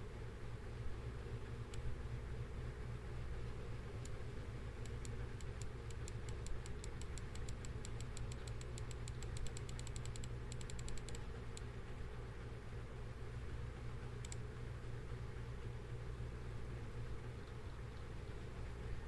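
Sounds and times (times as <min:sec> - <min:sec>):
low steady hum: 0:00.0 - 0:19.0
computer mouse clicking: 0:04.8 - 0:11.7, 0:14.2 - 0:14.4.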